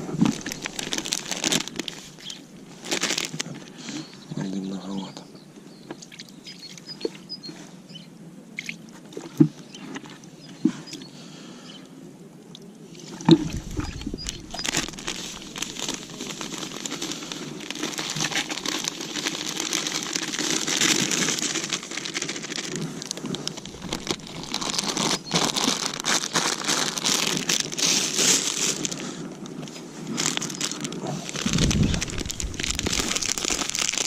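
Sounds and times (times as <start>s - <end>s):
hands crunching damp bait mix: 0.0s - 4.2s, 13.4s - 34.0s.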